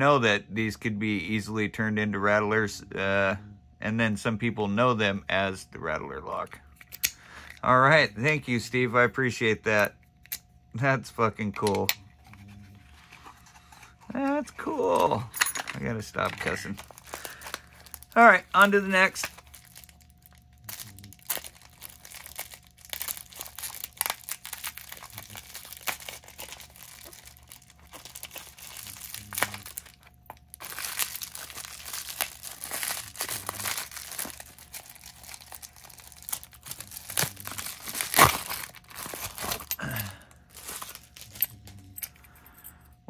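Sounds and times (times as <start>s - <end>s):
packaging crinkling and tearing: 15.8s - 42.0s.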